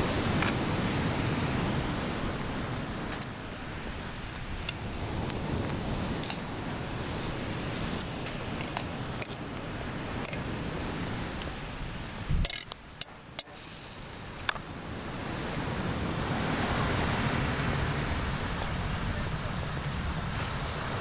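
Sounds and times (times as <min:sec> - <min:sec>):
waves washing on shore: 0:00.0 - 0:21.0
sharp clicks and knocks: 0:08.0 - 0:09.4, 0:12.4 - 0:14.7.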